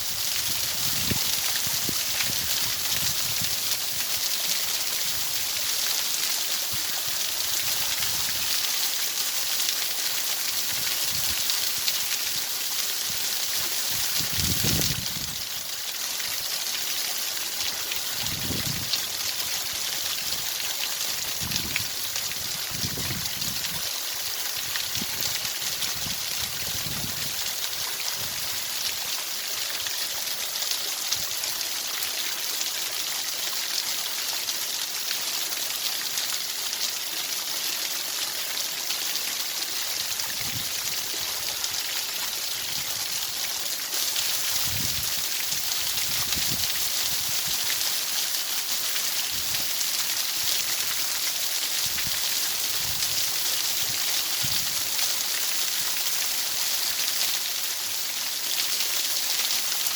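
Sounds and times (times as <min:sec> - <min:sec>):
running water hiss: 0:00.0 - 0:59.9.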